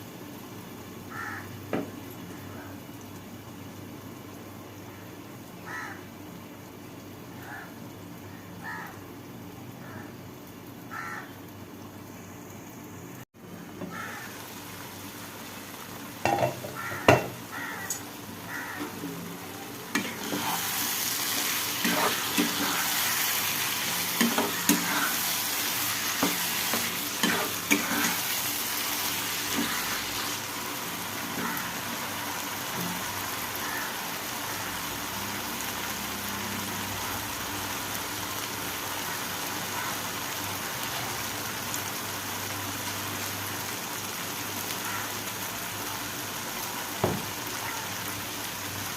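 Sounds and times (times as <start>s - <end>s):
food sizzling in a pan: 0.0s - 48.9s
spoon knocking and scraping pan: 16.2s - 17.4s, 21.4s - 23.1s, 24.1s - 28.2s.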